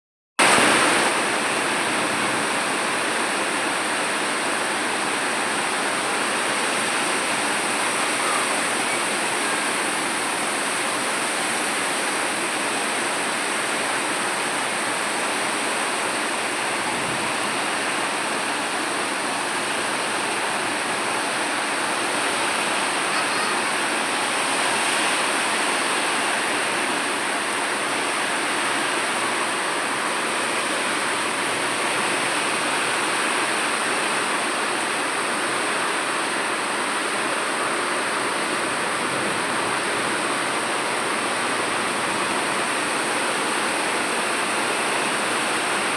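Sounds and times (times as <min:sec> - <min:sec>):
rain falling: 0:00.4 - 0:45.9.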